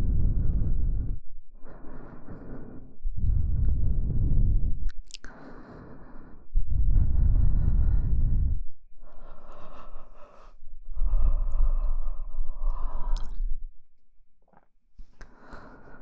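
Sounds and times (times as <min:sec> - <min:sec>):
low rumble: 0:00.0 - 0:01.3, 0:03.0 - 0:04.9, 0:06.6 - 0:13.8
close breathing: 0:00.0 - 0:13.6, 0:15.0 - 0:16.0.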